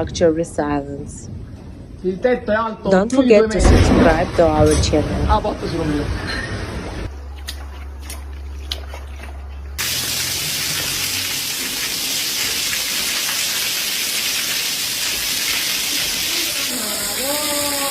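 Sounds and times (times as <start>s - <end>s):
low hum: 0.0s - 2.2s, 2.8s - 11.5s
water rushing: 9.8s - 17.9s.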